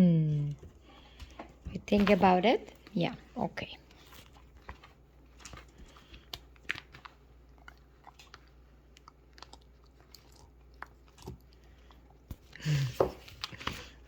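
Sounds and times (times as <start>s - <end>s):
puppy teeth crunching on bone: 4.2s - 14.0s.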